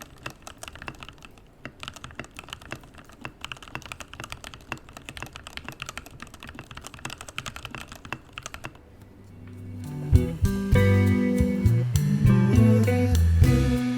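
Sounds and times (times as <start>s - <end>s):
guitar and bass music: 9.2s - 13.9s.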